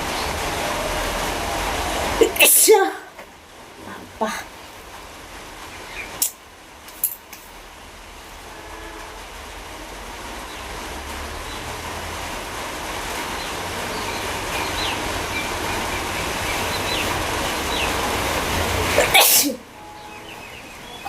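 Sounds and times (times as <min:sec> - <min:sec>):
steady background noise: 0:00.0 - 0:21.0
woman sneezing: 0:19.0 - 0:19.6.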